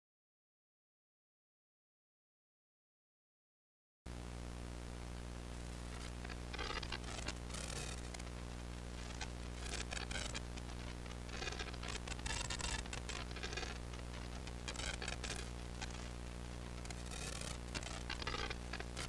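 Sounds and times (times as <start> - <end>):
amplifier hum: 4.1 - 19.0.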